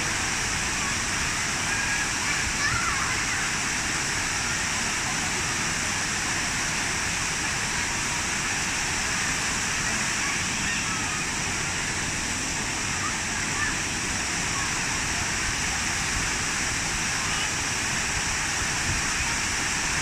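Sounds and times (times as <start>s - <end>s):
falling water rushing: 0.0s - 20.0s.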